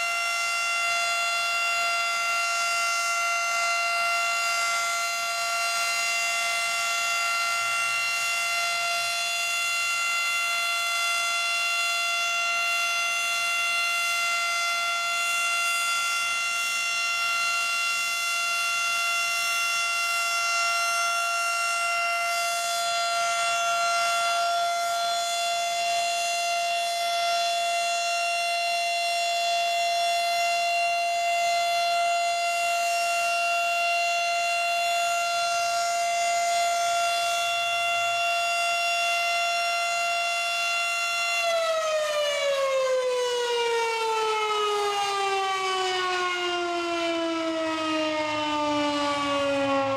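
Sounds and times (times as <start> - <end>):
mechanical warning siren steady tone: 0.0 - 49.9.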